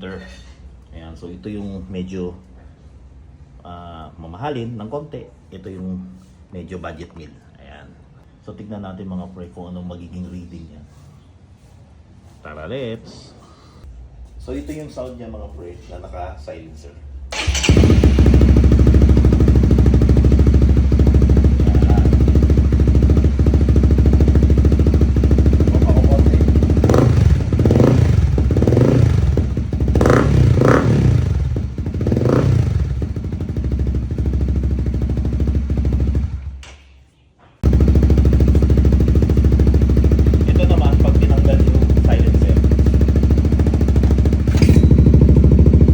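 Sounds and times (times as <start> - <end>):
motorcycle engine idling and revving: 17.3 - 36.6, 37.6 - 45.9.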